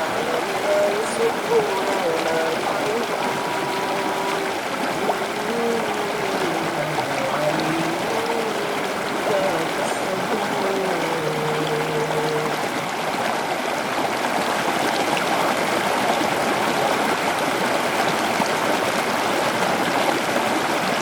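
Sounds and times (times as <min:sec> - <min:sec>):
chanted recitation: 0:00.0 - 0:13.1
river water rushing: 0:00.0 - 0:21.0.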